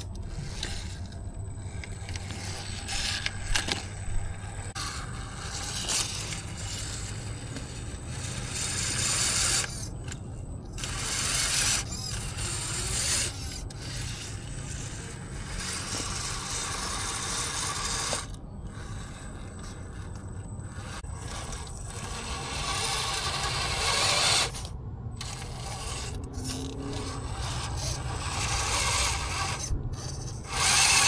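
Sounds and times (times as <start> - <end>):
electric motor and gears whirring: 0.0 - 31.0.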